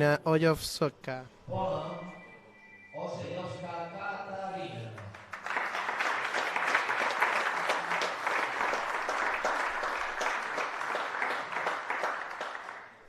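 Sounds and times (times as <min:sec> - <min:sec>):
audience applauding: 0:04.9 - 0:13.0.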